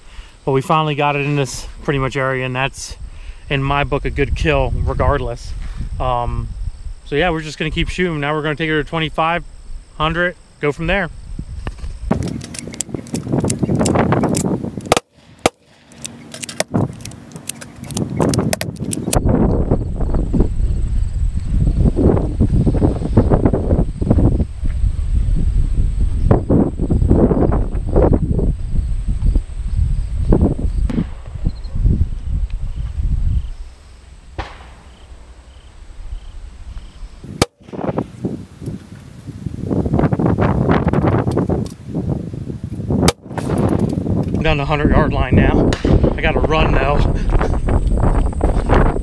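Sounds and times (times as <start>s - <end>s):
wind buffeting microphone: 1.0s - 15.0s, 16.6s - 49.0s
movement noise: 11.5s - 19.2s
sharp crack: 12.1s - 19.2s, 30.9s - 31.8s, 34.0s - 36.6s, 37.2s - 38.2s, 45.6s - 46.7s.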